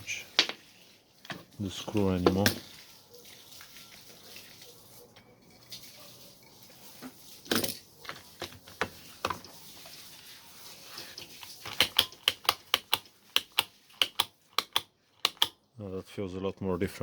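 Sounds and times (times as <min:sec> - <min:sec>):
plastic housing knocks and clicks: 0:11.6 - 0:15.5
trigger switch clicking: 0:11.7 - 0:15.6.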